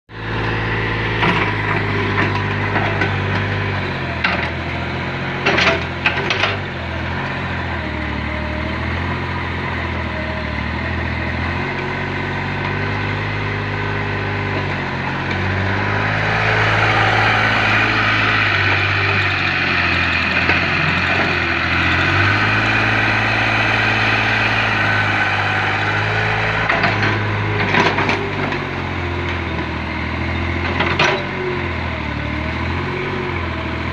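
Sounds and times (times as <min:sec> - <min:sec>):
engine running: 0:00.1 - 0:33.9.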